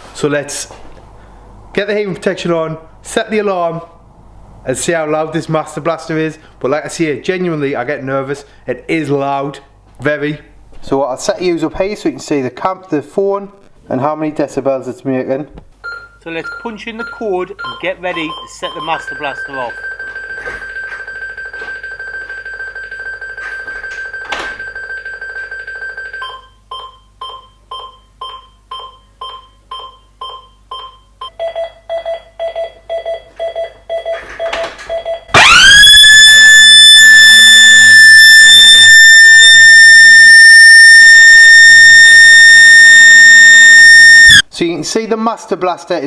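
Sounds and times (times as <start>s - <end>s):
alarm panel tone and beeps: 15.8s - 21.2s, 26.2s - 35.4s, 38.1s - 44.4s
alarm siren: 35.3s - 44.4s.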